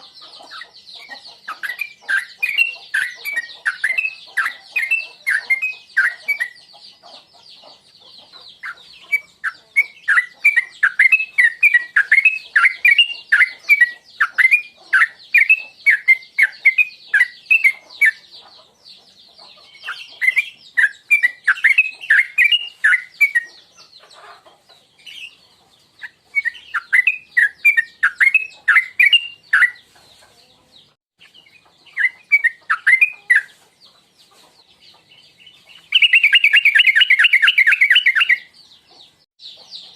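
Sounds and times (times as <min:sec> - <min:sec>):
bird singing bubbly chirps: 0:26.0 - 0:29.8, 0:35.8 - 0:38.6.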